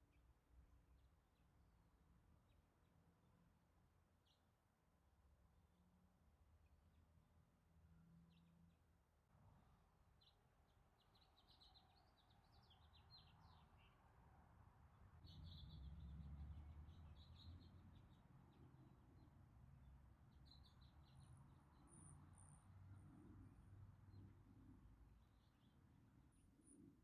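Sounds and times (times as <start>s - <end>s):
faint birds chirping: 15.1s - 27.0s.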